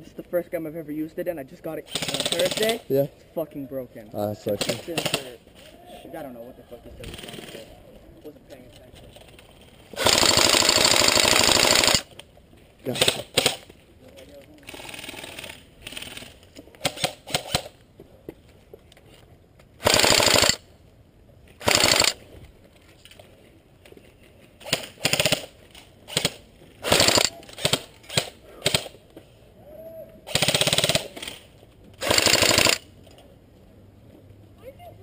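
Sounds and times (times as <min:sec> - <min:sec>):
airsoft guns firing in bursts: 0:01.9 - 0:02.8, 0:04.6 - 0:05.4, 0:10.0 - 0:12.1, 0:12.9 - 0:13.7, 0:19.8 - 0:20.6, 0:21.6 - 0:22.2, 0:24.6 - 0:28.9, 0:30.3 - 0:31.4, 0:32.0 - 0:32.8.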